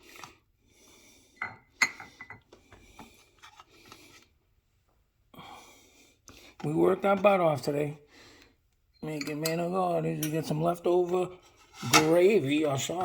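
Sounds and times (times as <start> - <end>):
utensil scraping a baking dish: 10.9 - 13.0.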